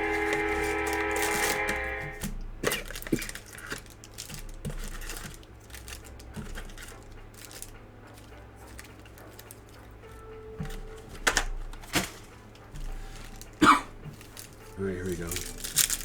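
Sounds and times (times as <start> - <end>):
guitar music: 0.0 - 2.6, 7.3 - 16.0
card packs handled and opened: 0.0 - 16.0.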